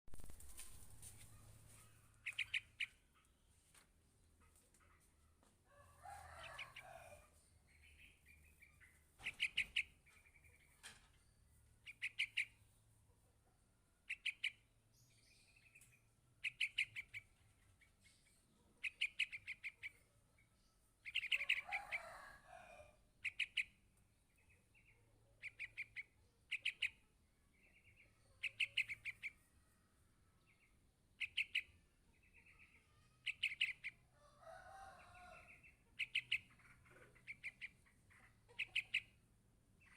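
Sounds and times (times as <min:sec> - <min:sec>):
bird chick high chirps: 0:00.1 - 0:03.4, 0:05.7 - 0:12.8, 0:14.0 - 0:20.2, 0:20.8 - 0:39.9.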